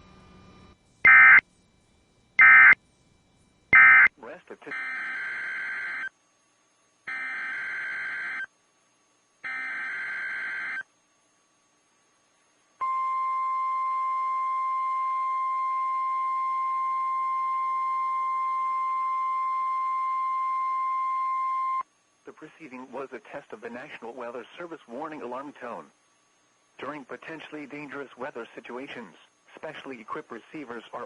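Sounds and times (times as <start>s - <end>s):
steady warning alarm tone: 0.0s - 6.2s, 7.0s - 21.8s
harsh digital data bursts: 1.0s - 1.4s, 2.4s - 2.8s, 3.8s - 6.1s.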